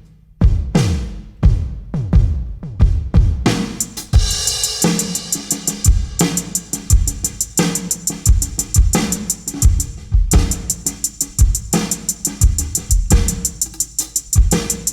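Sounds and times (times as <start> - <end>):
electronic kick drum: 0.4 - 14.9
snare drum: 0.5 - 14.9
hi-hat ticks: 3.8 - 14.9.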